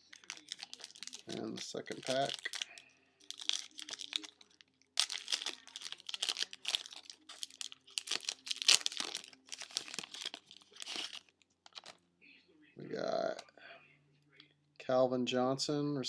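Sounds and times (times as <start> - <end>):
card pack wrapper tearing: 0.0 - 12.0.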